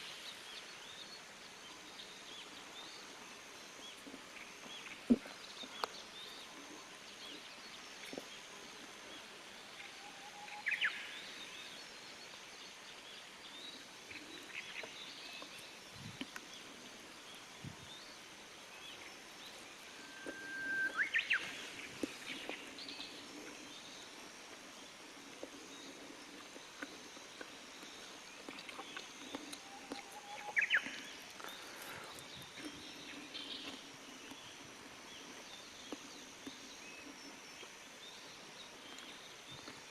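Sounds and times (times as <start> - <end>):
bush warbler singing: 18.8 - 24.0, 28.8 - 37.0.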